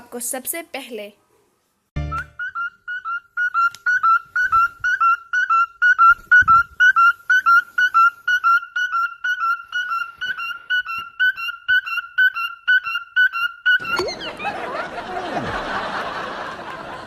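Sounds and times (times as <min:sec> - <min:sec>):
cockatiel whistling: 0:02.0 - 0:14.6.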